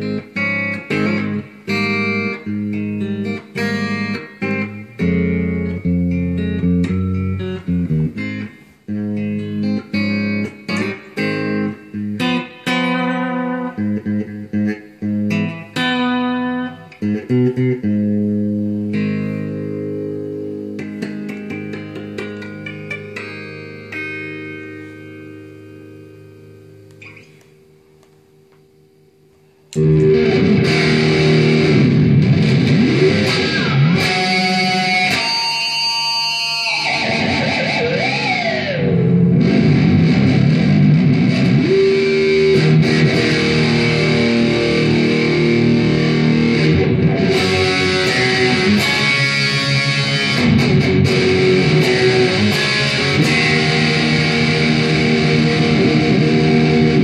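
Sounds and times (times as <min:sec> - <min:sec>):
electric guitar chord ringing: 0:00.0 - 0:57.0
fast electric guitar riffing: 0:29.8 - 0:57.0
guitar pitch swoops: 0:29.8 - 0:57.0.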